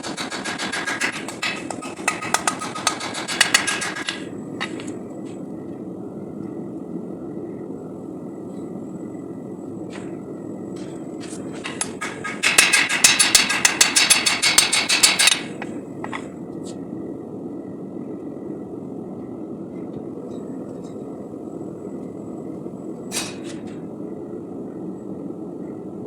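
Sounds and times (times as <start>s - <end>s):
gas forge burner roar: 0.0s - 16.6s.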